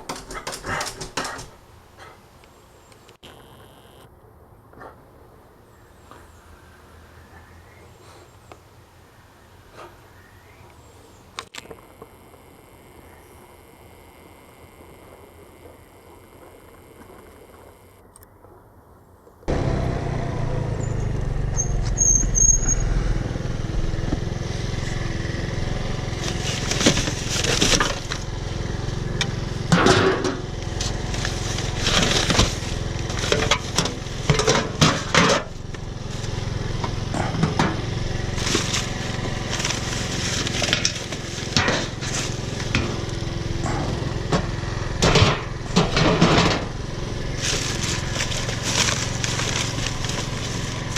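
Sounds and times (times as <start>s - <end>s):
motor running: 3.2s - 4.1s, 11.6s - 18.1s, 19.5s - 50.9s
irregular clanks and crashes: 44.2s - 46.8s.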